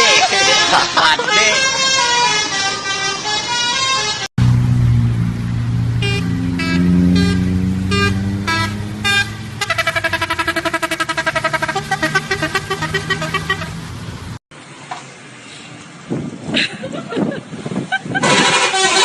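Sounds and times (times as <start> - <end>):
bus horn fast pulsing tune: 0.0 - 4.6, 5.8 - 14.0, 18.2 - 19.0
multi-tone horn tune: 1.3 - 4.3, 5.9 - 13.9, 18.2 - 19.0
bus engine running: 2.0 - 14.4, 15.1 - 19.0.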